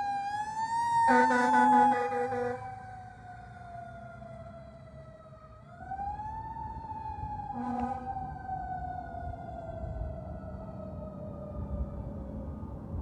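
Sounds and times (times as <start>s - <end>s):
air horn blast: 1.1s - 2.6s, 7.5s - 8.2s.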